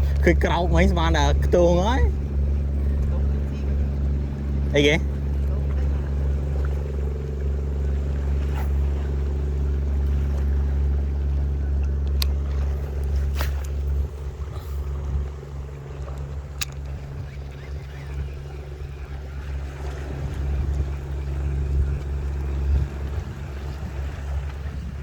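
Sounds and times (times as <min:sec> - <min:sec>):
small boat engine humming: 0:00.0 - 0:25.0
sharp clicks: 0:16.0 - 0:18.2.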